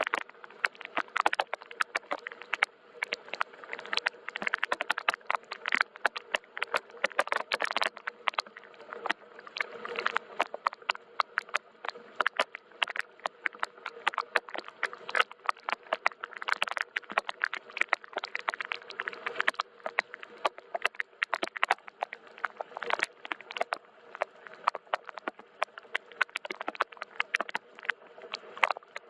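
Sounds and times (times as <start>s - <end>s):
rain tapping on hard surface: 10.0s - 29.0s.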